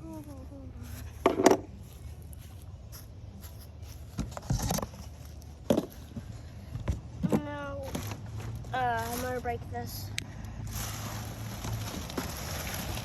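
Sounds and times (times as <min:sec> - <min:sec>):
rustling of packaging: 0:07.8 - 0:09.8, 0:10.7 - 0:13.0.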